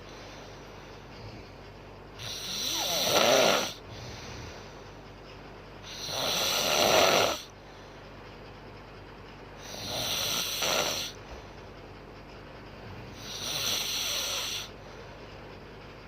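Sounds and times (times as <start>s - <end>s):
woman snoring: 2.2s - 3.8s, 5.9s - 7.5s, 9.6s - 11.2s, 13.1s - 14.7s.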